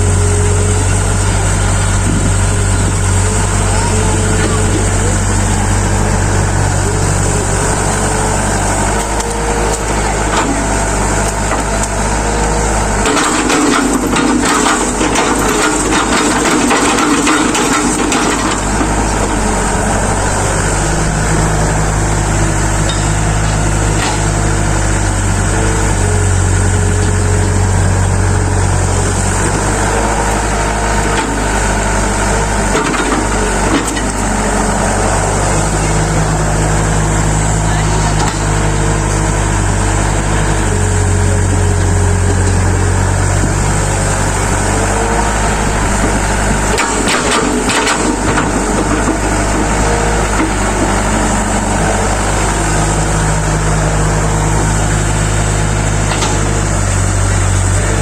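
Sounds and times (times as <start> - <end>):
excavator engine running: 0.0 - 58.0.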